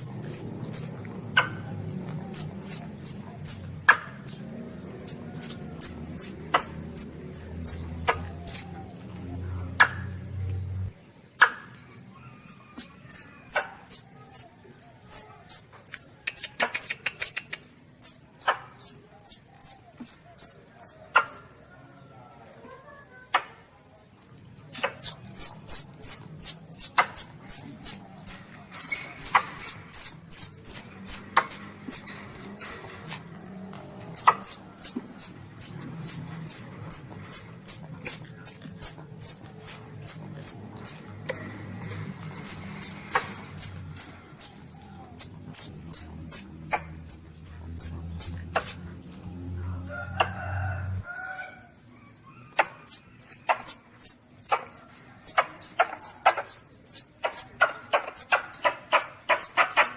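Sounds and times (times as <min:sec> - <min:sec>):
young animal shrill squeaks: 0:02.4 - 0:08.7, 0:12.3 - 0:16.4, 0:17.2 - 0:21.4, 0:24.8 - 0:33.2, 0:34.2 - 0:41.0, 0:42.4 - 0:48.8, 0:52.4 - 0:59.9.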